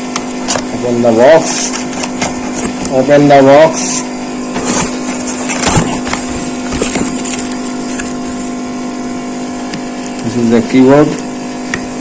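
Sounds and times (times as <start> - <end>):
steady background hum: 0.0 - 12.0
cardboard packaging rustling: 4.5 - 8.6.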